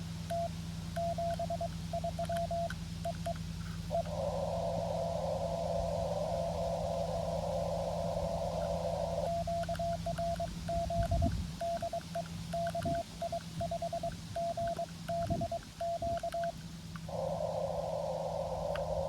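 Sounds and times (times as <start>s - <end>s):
morse code beeping tone: 0.3s - 3.4s, 5.2s - 16.6s
radio receiver hiss: 1.0s - 19.0s.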